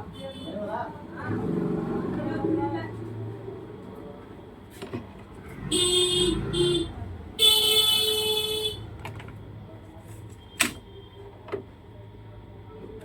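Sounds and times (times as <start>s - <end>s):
vehicle horn honks: 5.6s - 8.8s.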